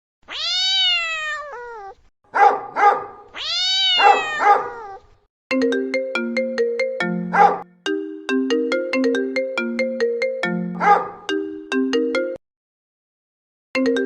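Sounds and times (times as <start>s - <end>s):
cat meowing ringtone: 0.3s - 1.9s, 3.4s - 5.0s
plucked electronic melody: 5.5s - 12.4s.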